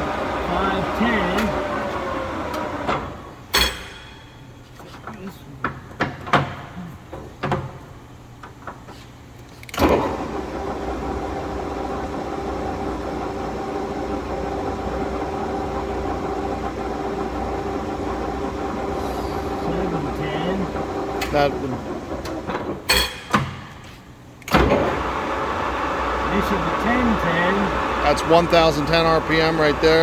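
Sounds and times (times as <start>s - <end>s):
lathe gear whine: 0.0s - 3.3s, 9.9s - 22.2s, 24.8s - 30.0s.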